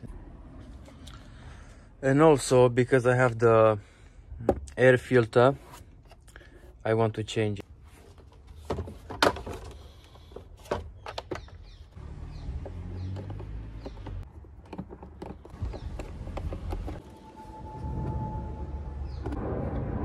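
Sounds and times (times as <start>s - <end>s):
low rumble: 17.0s - 20.0s.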